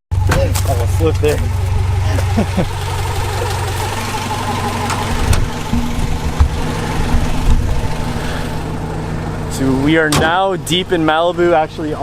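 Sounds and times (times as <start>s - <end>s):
car engine idling: 0.1s - 12.0s
uneven low rumbling: 0.1s - 12.0s.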